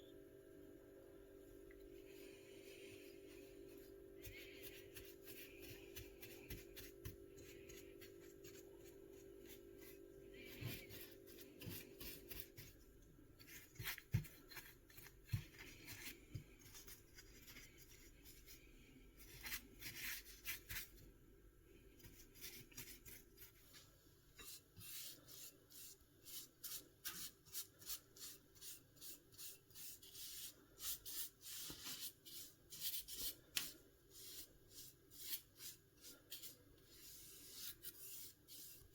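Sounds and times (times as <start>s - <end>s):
paintbrush strokes on metal: 2.1s - 12.8s, 24.4s - 38.9s.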